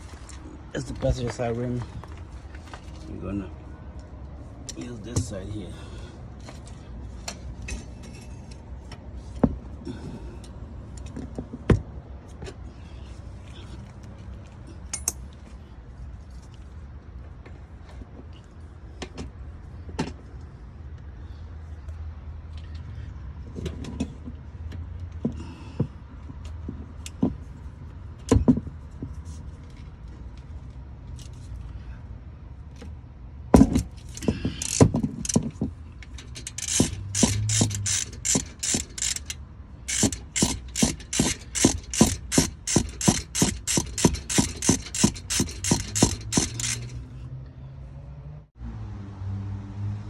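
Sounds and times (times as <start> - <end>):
metallic clicks of socket wrench: 34.1 - 35.4, 36.0 - 47.0.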